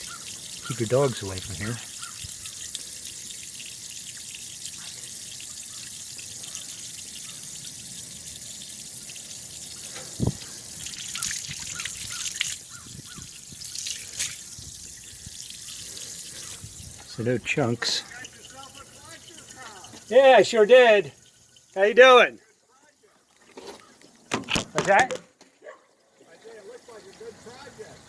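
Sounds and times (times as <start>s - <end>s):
water trickling onto ground: 0.0s - 24.3s, 25.9s - 28.0s.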